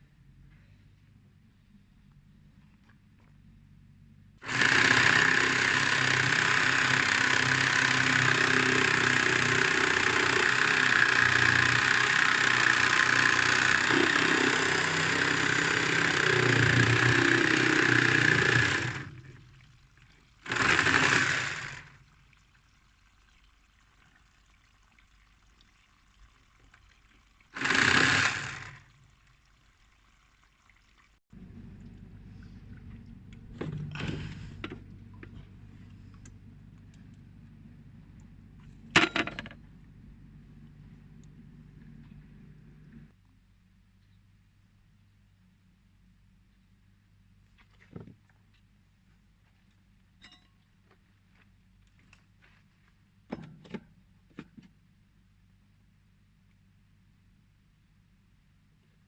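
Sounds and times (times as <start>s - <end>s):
water gushing from pipe: 4.4s - 34.6s
water spurts: 4.4s - 37.0s.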